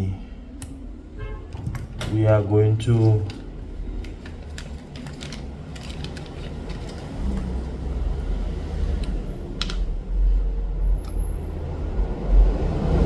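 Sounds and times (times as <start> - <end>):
low rumble: 0.0 - 13.0
small tools clicking and tapping: 4.0 - 7.6, 9.0 - 9.9.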